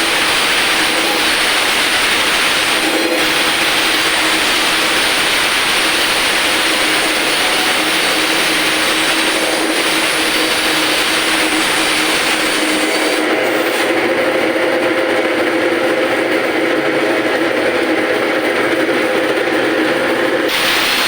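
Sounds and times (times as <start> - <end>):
fish-cutting machine humming: 0.0 - 21.0
dense hiss: 20.5 - 21.0.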